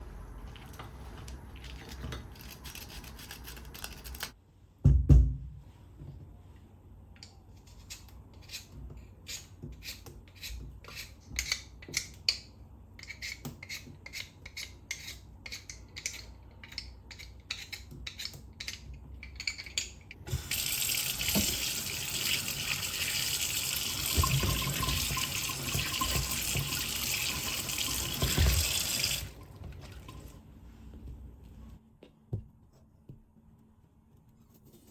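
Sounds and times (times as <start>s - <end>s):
tap water rushing into sink: 20.3s - 30.3s.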